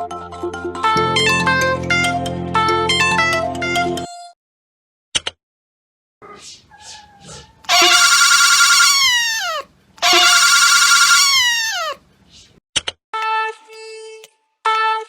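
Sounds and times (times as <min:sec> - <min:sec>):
cat meowing: 0:06.9 - 0:12.0.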